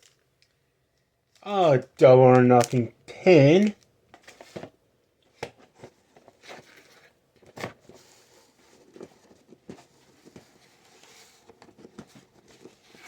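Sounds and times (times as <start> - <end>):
packaging taps clicks and rustles: 0.0 - 7.9.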